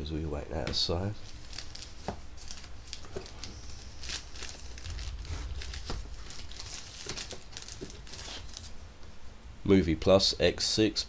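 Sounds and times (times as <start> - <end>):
steady low hum: 0.0 - 10.5
plastic and cardboard rustling: 0.7 - 8.8.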